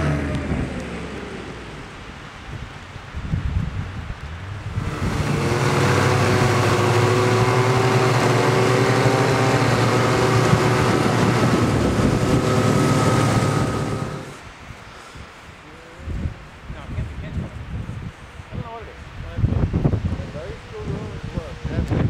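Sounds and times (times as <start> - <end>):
snowmobile engine running: 0.0 - 2.0, 4.6 - 14.4.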